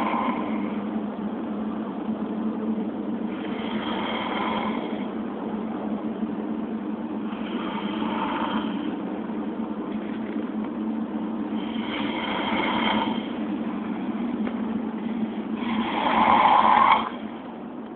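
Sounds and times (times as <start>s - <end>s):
person snoring: 0.0s - 0.8s, 3.3s - 5.1s, 7.3s - 8.9s, 11.6s - 13.4s, 15.0s - 17.2s.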